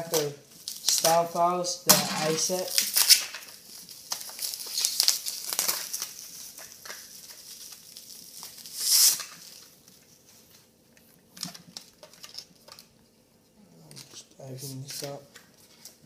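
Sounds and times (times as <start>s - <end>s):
packaging rustling: 2.2s - 10.8s.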